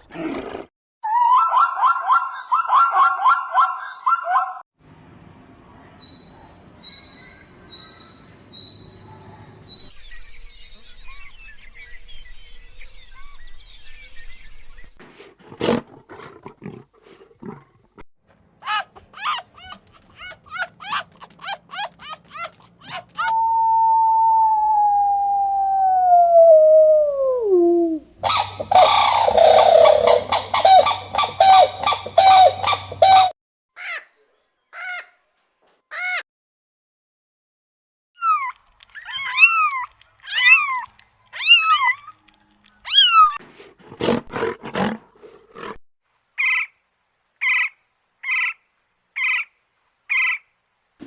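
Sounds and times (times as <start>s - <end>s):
fast rising animal calls: 18.6s - 33.3s
dog howling: 18.7s - 28.0s
high whistled call notes: 28.2s - 33.3s
turkeys gobbling: 28.2s - 33.3s
faint background hiss: 46.1s - 51.0s.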